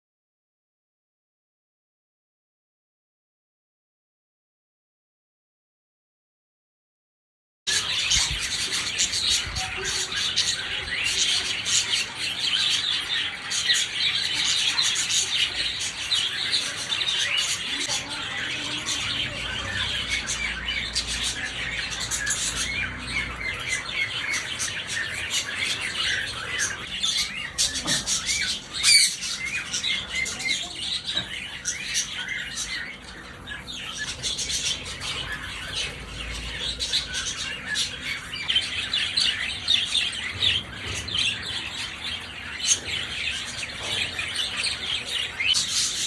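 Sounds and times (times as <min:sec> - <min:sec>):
parrots chattering and chirping: 0:07.7 - 0:46.0.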